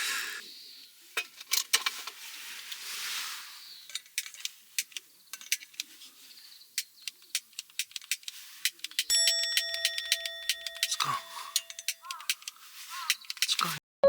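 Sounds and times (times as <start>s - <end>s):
sharp metallic clicks: 6.8s - 13.8s.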